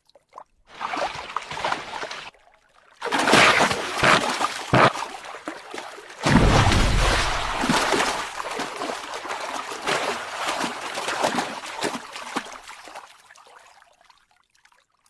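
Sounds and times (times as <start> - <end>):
crocodile splashing in water: 0.7 - 2.4, 3.0 - 13.0.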